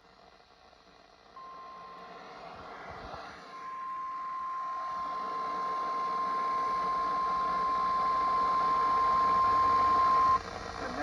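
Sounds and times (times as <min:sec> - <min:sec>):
steady alarm beep: 0:03.6 - 0:10.4.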